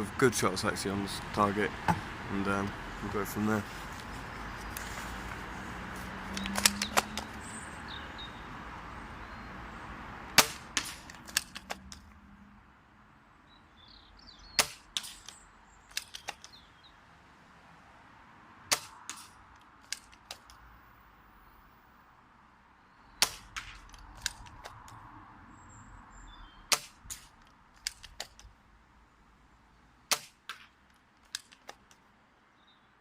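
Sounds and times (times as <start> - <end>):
rifle bolt clicks: 6.3 - 7.3, 10.5 - 12.1, 15.0 - 16.6, 26.7 - 28.5, 30.1 - 32.0
airsoft rifle shots: 10.3 - 11.8, 14.6 - 16.5, 18.7 - 20.4, 23.2 - 24.7, 26.7 - 28.4, 30.1 - 30.7.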